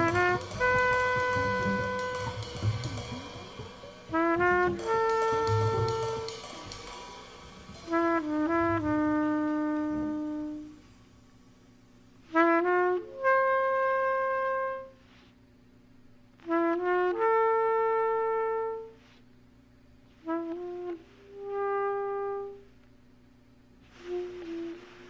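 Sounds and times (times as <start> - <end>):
solo trumpet playing: 0.0 - 10.9, 12.3 - 15.1, 16.4 - 19.0, 20.2 - 22.7, 24.0 - 25.0
faint low hum: 0.0 - 25.0.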